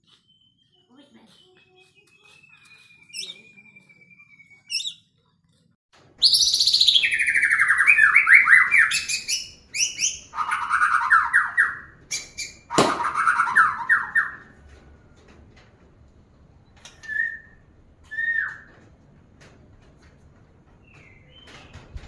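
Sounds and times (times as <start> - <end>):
songbird singing: 0.0 - 5.2, 6.2 - 14.6.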